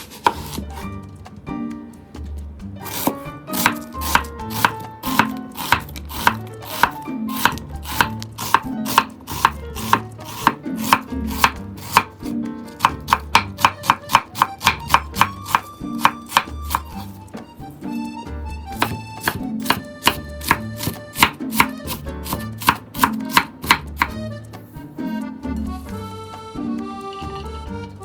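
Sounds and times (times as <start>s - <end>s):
knife chopping on cutting board: 0.0s - 1.0s, 2.8s - 18.0s, 18.7s - 24.2s
background music: 0.0s - 28.0s.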